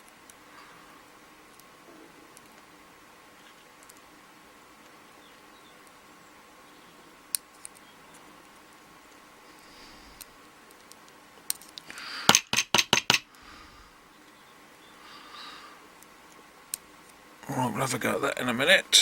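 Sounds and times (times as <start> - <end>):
sharp metallic taps: 12.3 - 13.3.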